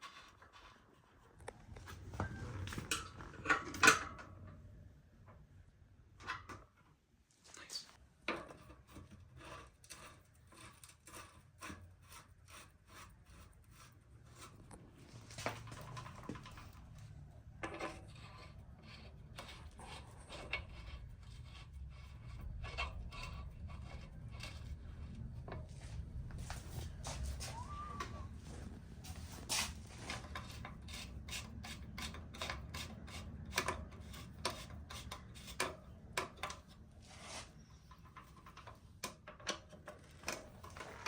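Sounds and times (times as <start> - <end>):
small clicks and taps on bicycle parts: 37.9 - 41.0.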